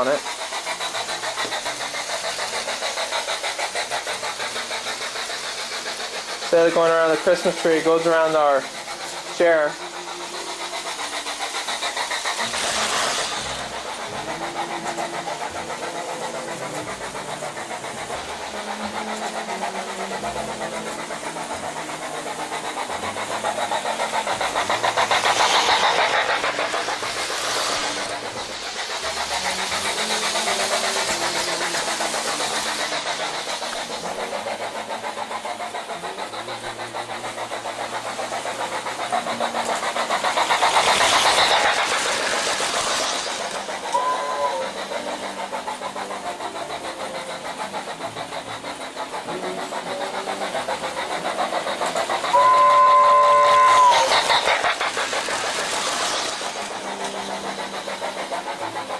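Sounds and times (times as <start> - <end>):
toy train motor hum: 0.0 - 58.9
wheels clicking over rail joints: 0.0 - 58.9
toy train whistle: 43.0 - 45.2, 51.6 - 55.0.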